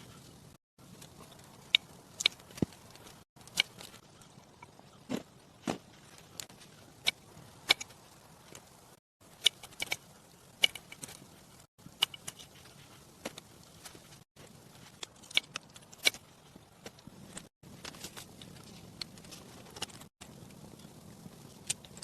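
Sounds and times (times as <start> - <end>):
sharp knocks and crunches: 5.0 - 7.9.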